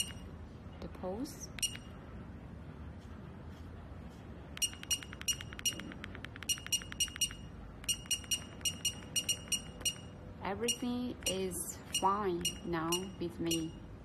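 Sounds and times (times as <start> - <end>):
short high electronic beeps: 4.6 - 5.8, 6.4 - 10.8
quick electronic ticks: 4.6 - 10.1.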